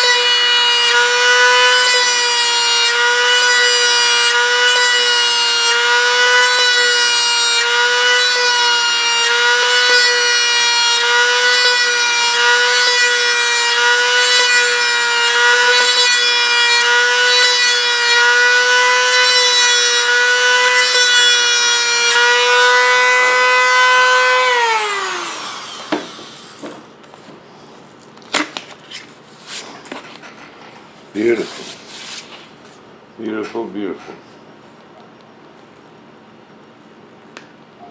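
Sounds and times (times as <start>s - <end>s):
rotary tool whining: 0.0s - 26.9s.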